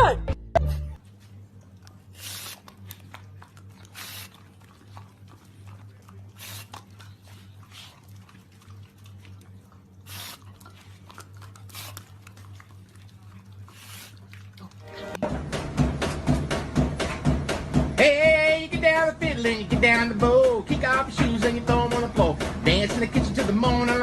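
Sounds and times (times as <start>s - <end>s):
low steady hum: 0.0s - 16.4s.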